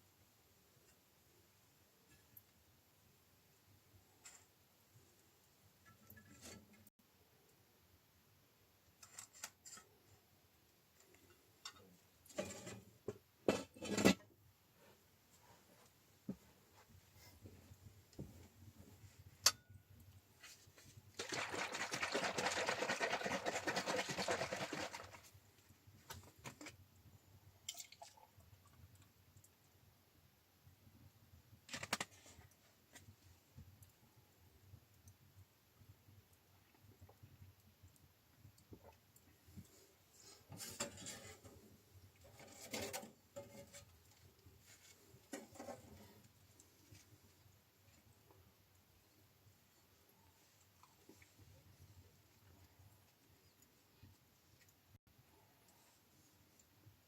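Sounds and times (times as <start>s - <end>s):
liquid being poured: 21.1s - 25.2s
rustling: 38.8s - 56.8s.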